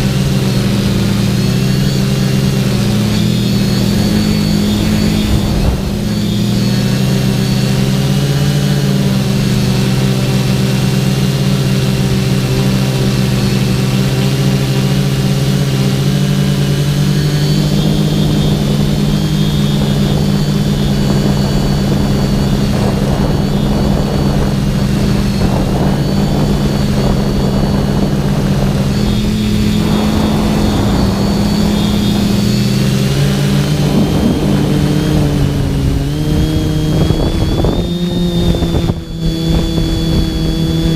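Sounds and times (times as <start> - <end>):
drone motors and propellers whining: 0.0 - 40.9
rushing air: 2.9 - 7.7, 21.0 - 37.7.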